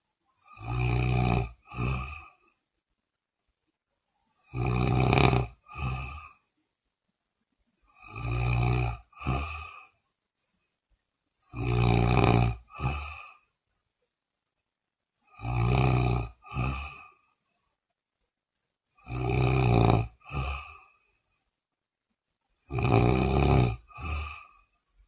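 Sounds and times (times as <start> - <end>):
woman snoring loudly: 0.4 - 2.4, 4.4 - 6.4, 7.9 - 9.9, 11.4 - 13.4, 15.2 - 17.2, 19.0 - 21.0, 22.6 - 24.8.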